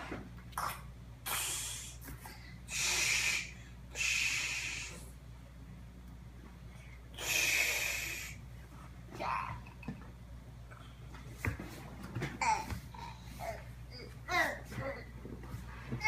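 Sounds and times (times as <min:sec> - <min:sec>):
person breathing in airy puffs: 0:01.3 - 0:05.1, 0:07.0 - 0:08.4.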